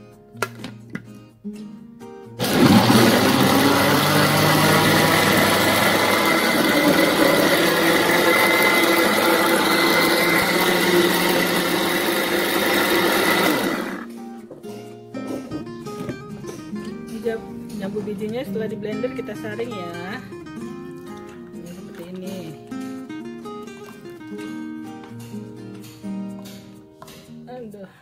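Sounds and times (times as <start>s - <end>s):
electric blender motor whining: 2.4s - 14.1s.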